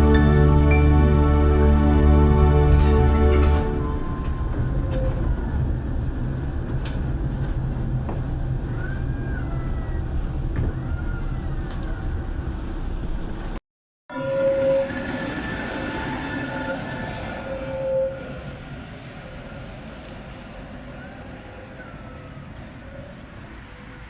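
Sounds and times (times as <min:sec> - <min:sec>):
tram rumbling: 0:00.0 - 0:24.0.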